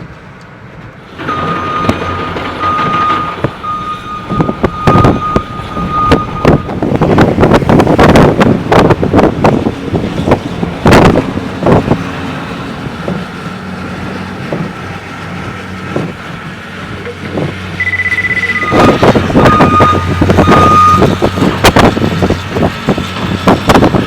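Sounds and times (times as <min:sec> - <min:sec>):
vehicle engine running: 0:01.0 - 0:24.0
high beep: 0:01.3 - 0:06.8, 0:17.8 - 0:21.1.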